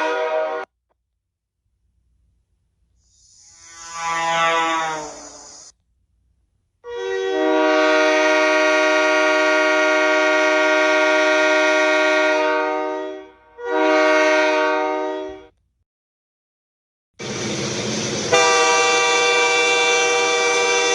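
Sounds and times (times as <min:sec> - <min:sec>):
locomotive air horn blasts: 0:00.0 - 0:00.7, 0:03.9 - 0:05.3, 0:06.8 - 0:15.5, 0:18.3 - 0:20.9.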